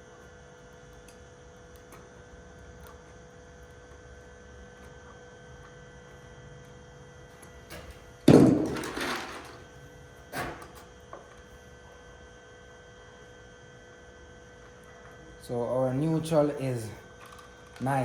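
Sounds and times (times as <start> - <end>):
electrical hum: 0.0 - 18.0
loud knock: 8.3 - 8.8.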